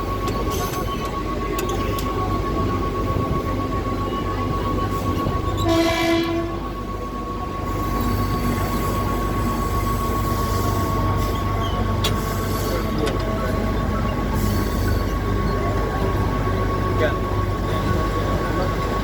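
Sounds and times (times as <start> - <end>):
train rumbling: 0.0 - 19.0
train horn blast: 5.6 - 6.7.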